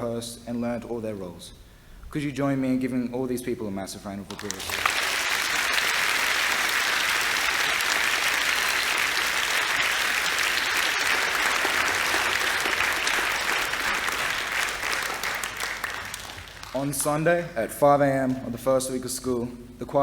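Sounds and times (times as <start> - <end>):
audience applauding: 4.3 - 17.1.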